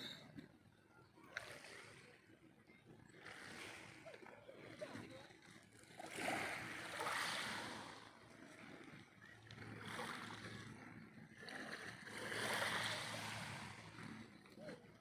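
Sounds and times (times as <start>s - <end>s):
small waves washing in: 3.2s - 14.9s.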